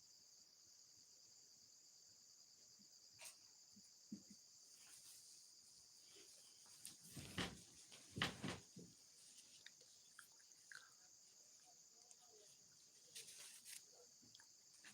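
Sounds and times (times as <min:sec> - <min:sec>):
crickets chirring: 0:00.0 - 0:14.9
close knocks and rustles: 0:06.2 - 0:09.6.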